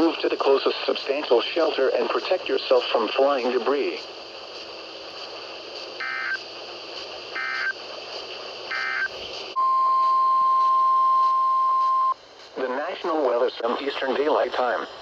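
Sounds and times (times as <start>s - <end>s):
faint radio hiss: 0.0s - 9.6s, 12.2s - 15.0s
steady warning alarm tone: 6.0s - 6.4s, 7.3s - 7.8s, 8.7s - 10.0s
warbling digital data bursts: 6.0s - 6.4s, 7.4s - 7.8s, 8.7s - 9.2s.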